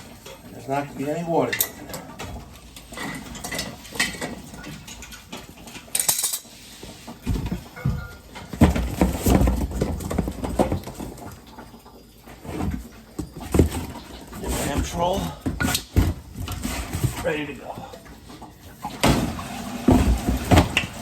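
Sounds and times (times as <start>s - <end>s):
metal clanks and scraping: 1.4s - 11.2s, 12.4s - 17.6s
thumps and knocks: 7.2s - 11.2s, 12.4s - 17.3s, 19.0s - 21.0s.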